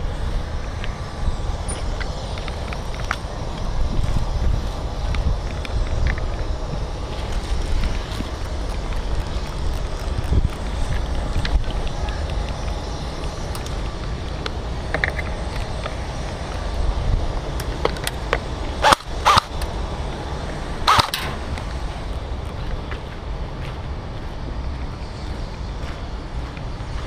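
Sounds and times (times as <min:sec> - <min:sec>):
wind on microphone: 0:00.0 - 0:27.0
airsoft guns firing: 0:18.8 - 0:19.6, 0:20.9 - 0:21.4.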